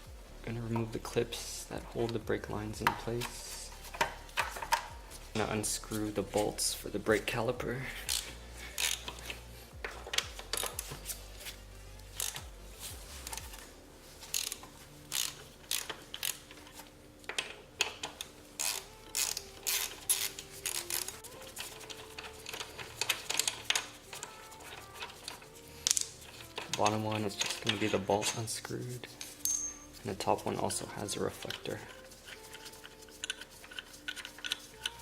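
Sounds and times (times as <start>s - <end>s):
ratchet wrench clicking: 8.1s - 11.2s, 12.1s - 12.5s, 13.2s - 30.5s, 31.2s - 35.0s.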